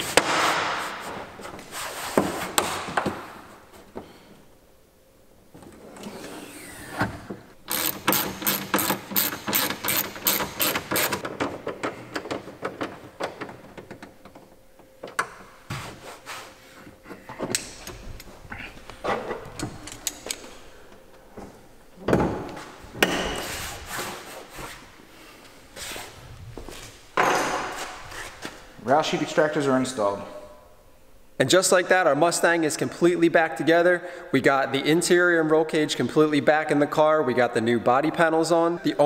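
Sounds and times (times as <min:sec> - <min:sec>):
ratchet wrench clicking: 0:07.7 - 0:11.2.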